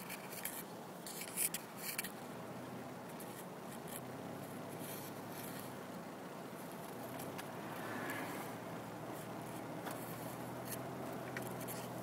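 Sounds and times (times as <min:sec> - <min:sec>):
car driving rumble from inside: 0:03.9 - 0:12.0.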